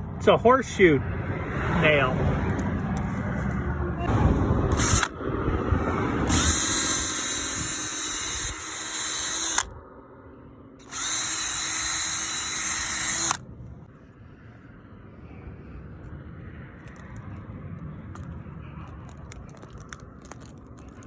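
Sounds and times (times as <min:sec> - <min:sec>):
power drill motor whining: 0:04.7 - 0:05.1, 0:06.2 - 0:09.7, 0:10.8 - 0:13.4.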